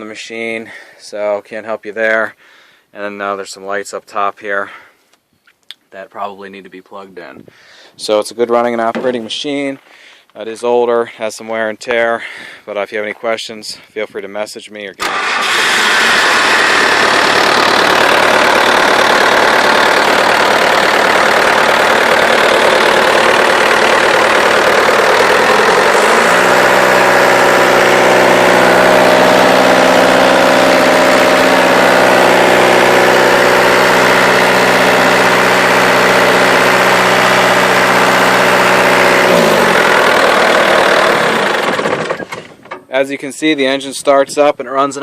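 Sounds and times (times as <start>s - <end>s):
diesel engine idling and revving: 15.0s - 42.6s.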